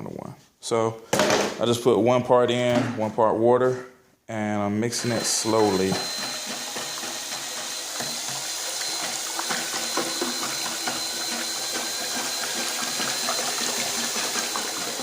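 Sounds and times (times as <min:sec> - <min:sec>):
liquid sloshing while stirred: 0:06.2 - 0:15.0.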